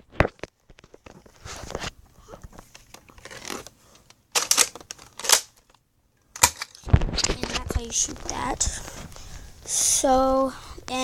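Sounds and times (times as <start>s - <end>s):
plastic toy blaster sliding and clacking: 3.2s - 5.6s.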